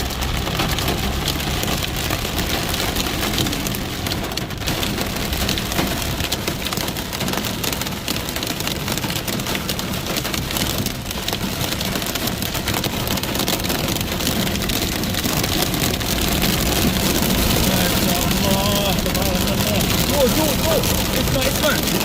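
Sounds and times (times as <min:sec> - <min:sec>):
heavy rain and hail pelting: 0:00.0 - 0:22.0.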